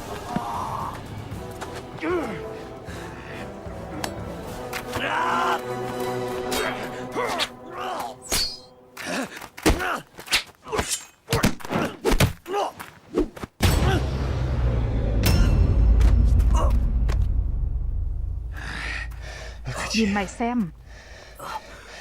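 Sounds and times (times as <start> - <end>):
men grunting and groaning: 0.1 - 1.2, 1.9 - 8.3, 9.0 - 12.9
loud low rumble: 14.2 - 21.3.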